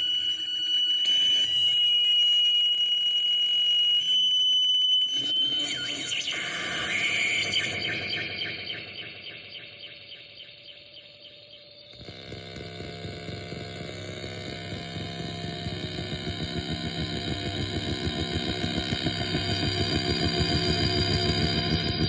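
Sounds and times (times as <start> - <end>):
high stuttering synth tone: 12.0 - 22.0
low fluttering synth drone: 12.0 - 22.0.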